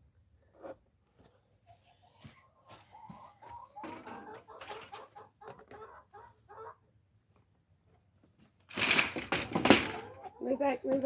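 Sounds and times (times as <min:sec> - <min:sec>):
hens clucking: 0:01.6 - 0:06.9, 0:09.4 - 0:11.0.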